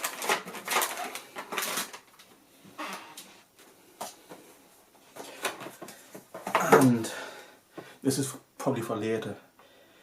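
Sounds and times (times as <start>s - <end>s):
packaging clicks and rustles: 0.0s - 2.4s.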